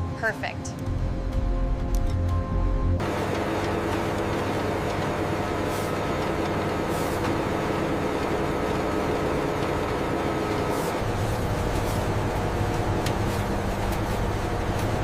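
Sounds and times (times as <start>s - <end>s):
factory machinery drone: 3.0s - 15.0s.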